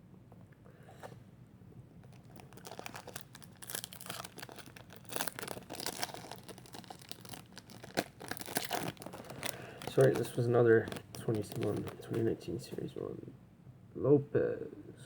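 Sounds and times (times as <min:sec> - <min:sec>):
wrapper tearing and crinkling: 0:02.0 - 0:12.3.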